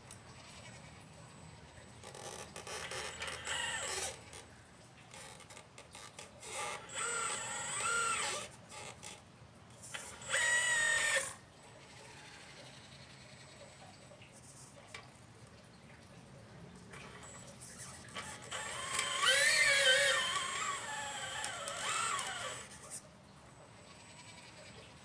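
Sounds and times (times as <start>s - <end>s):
toy excavator motors whining: 2.0s - 4.5s, 5.1s - 9.2s, 9.8s - 13.0s, 16.9s - 23.0s, 23.7s - 25.0s.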